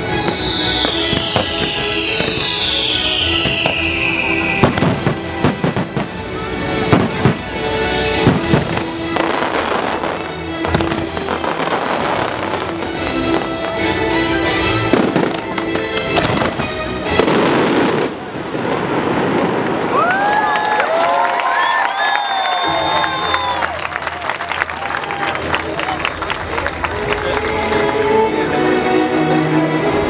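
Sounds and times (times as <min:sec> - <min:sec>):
orchestral music: 0:00.0 - 0:20.1, 0:22.3 - 0:30.0
fireworks bursting: 0:00.0 - 0:20.6
fireworks crackling: 0:00.0 - 0:28.2.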